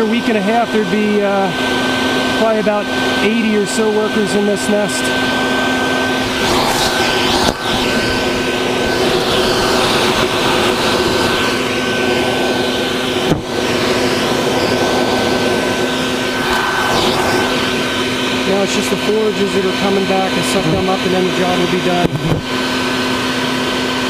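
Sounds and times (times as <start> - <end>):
vacuum cleaner motor whine: 0.0 - 24.0.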